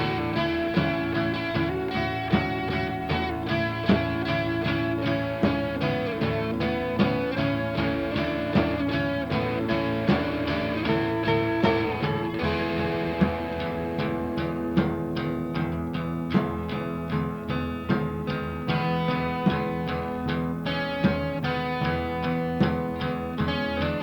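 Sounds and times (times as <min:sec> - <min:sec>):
sliding held melody line: 0:00.0 - 0:14.7
plucked guitar: 0:00.0 - 0:24.0
steady beat: 0:00.0 - 0:24.0.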